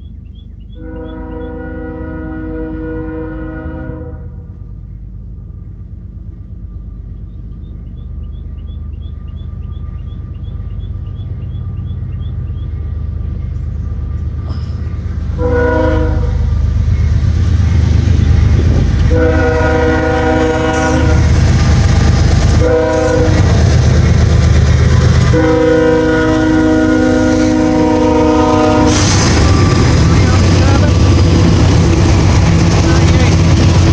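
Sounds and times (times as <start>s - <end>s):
train rumble: 0.0s - 33.9s
train air horn blasts: 0.8s - 4.6s, 15.2s - 16.5s, 19.0s - 23.8s, 24.9s - 33.9s.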